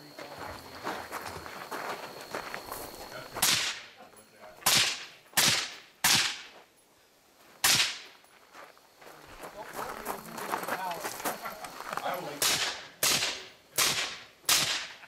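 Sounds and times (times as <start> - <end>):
rifle shots echoing: 4.6 - 6.5, 12.4 - 15.0.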